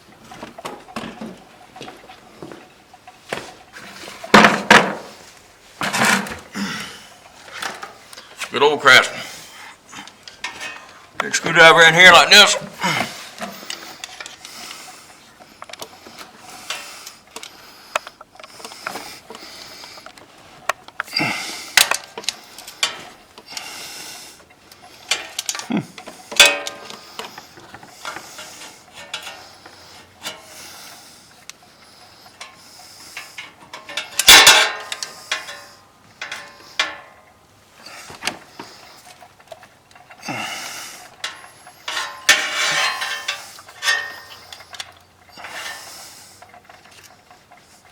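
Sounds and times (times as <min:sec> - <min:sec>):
screwdriver scraping on metal: 0:25.1 - 0:31.1, 0:40.8 - 0:46.4.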